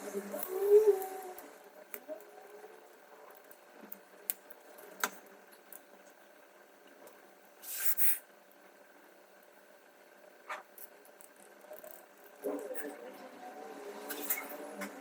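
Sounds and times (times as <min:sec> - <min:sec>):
short hiss: 0:07.6 - 0:08.2.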